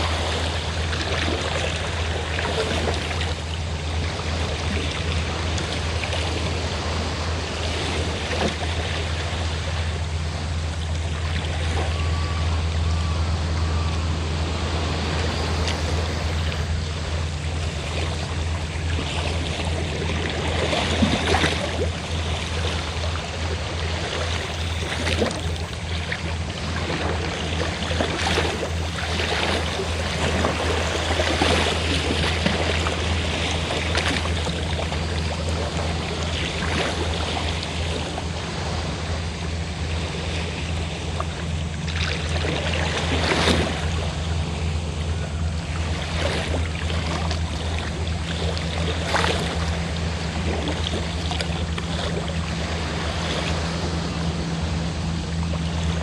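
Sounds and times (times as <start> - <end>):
boat engine drone: 0.0 - 56.0
sea waves washing: 0.0 - 56.0.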